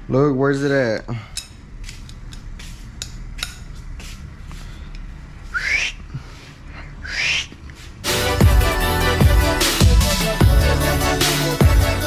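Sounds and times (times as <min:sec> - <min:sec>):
short rising whistles: 0:05.5 - 0:06.0, 0:07.0 - 0:07.5.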